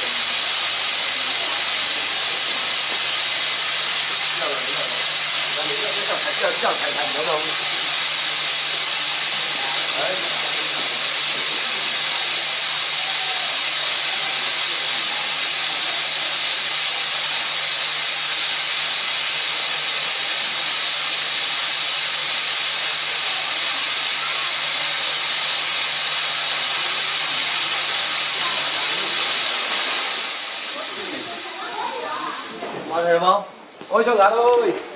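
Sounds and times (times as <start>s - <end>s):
fog generator hissing: 0.0s - 34.9s.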